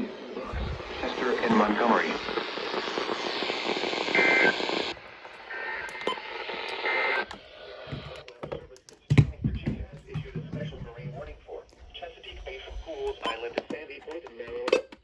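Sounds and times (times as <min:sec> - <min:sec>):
radio static: 0:00.0 - 0:15.0.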